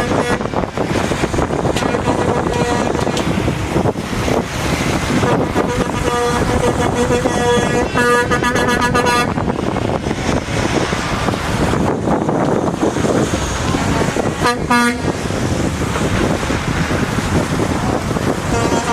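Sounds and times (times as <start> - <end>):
truck air horns honking: 0.0 - 0.6, 1.8 - 3.2, 5.1 - 9.5, 13.8 - 15.2, 18.4 - 18.9
road noise: 0.0 - 18.9.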